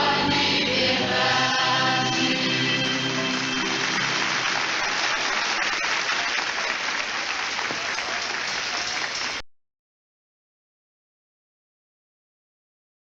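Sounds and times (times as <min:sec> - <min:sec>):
audience applauding: 0:02.9 - 0:09.4.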